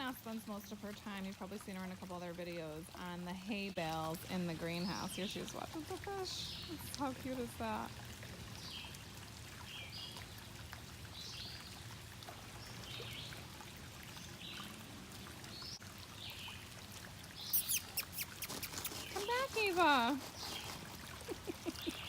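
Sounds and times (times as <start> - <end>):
water trickling and pouring: 0.0 - 22.0
small bird chirping: 17.4 - 19.7.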